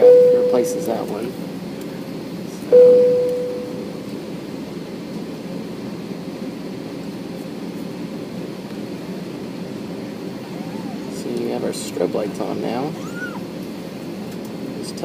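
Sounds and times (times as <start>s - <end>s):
cabin chime: 0.0s - 0.9s, 2.8s - 3.8s
airliner cabin hum: 0.0s - 15.0s.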